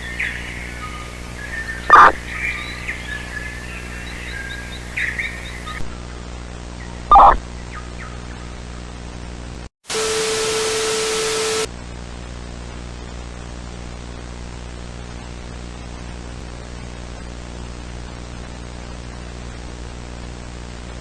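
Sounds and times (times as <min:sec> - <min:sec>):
burst of static: 0:00.0 - 0:05.8
steady tone: 0:00.0 - 0:05.8
low hum with hiss: 0:00.0 - 0:09.6.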